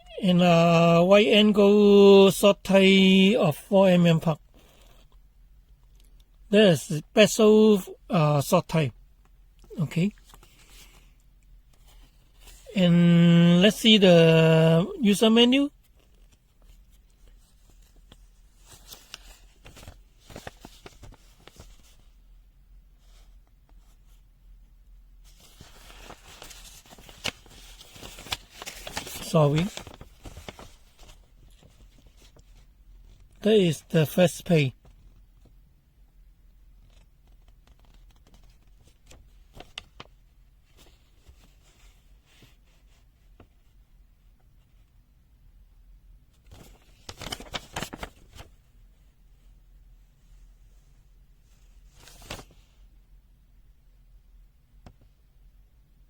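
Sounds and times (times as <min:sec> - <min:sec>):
pages turning: 0:10.1 - 0:11.0, 0:15.8 - 0:22.1, 0:25.2 - 0:33.4, 0:36.8 - 0:40.1, 0:46.4 - 0:48.6, 0:51.8 - 0:52.8
paper rustling and crackling: 0:10.1 - 0:11.1, 0:15.8 - 0:22.2, 0:25.2 - 0:33.4, 0:36.8 - 0:43.6, 0:46.4 - 0:48.7, 0:51.8 - 0:52.8.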